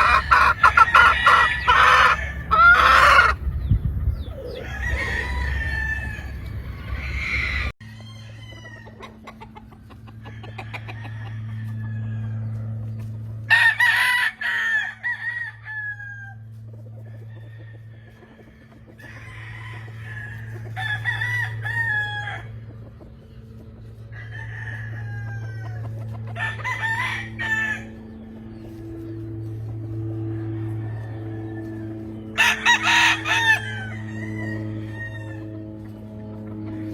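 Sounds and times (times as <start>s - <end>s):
low steady hum: 0.0s - 36.9s
roosters crowing: 0.0s - 36.9s.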